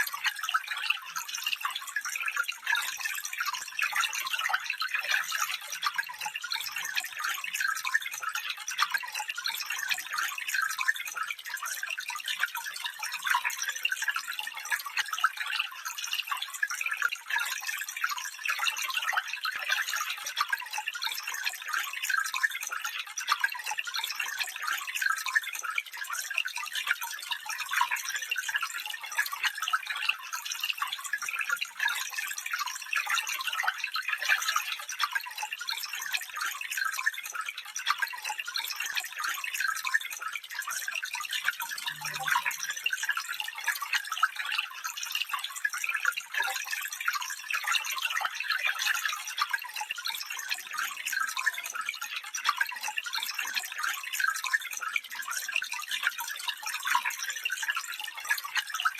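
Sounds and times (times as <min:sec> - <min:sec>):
small stream babbling: 0:41.6 - 0:43.8.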